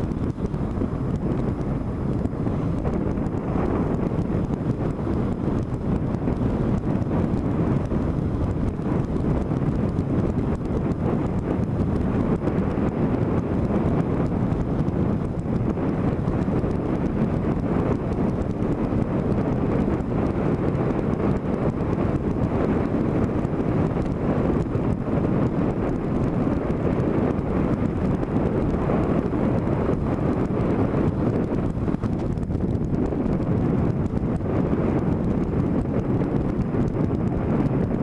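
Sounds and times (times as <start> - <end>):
motorcycle engine running: 0.0 - 38.0
wind rush on microphone: 0.0 - 38.0.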